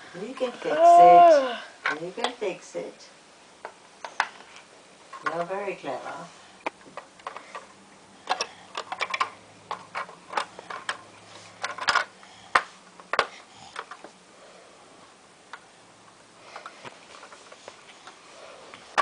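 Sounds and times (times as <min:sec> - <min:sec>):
plastic pieces clicking: 0:07.0 - 0:11.0.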